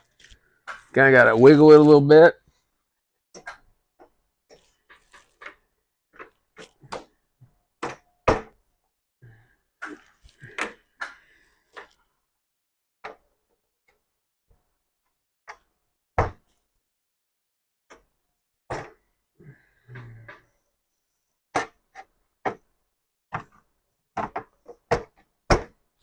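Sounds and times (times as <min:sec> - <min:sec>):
plastic shelf knocking and clunking: 0:24.2 - 0:25.8.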